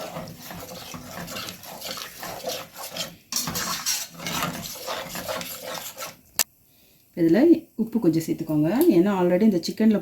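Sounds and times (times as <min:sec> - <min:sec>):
spoon scraping and sloshing in pan: 0:00.0 - 0:06.5.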